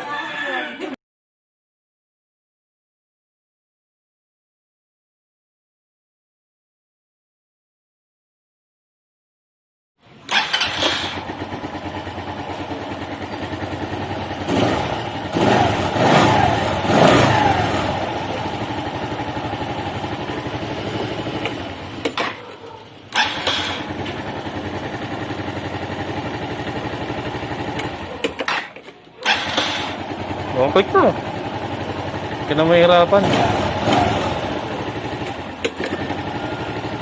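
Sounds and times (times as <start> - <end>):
scooter engine puttering and revving: 10.0 - 37.0.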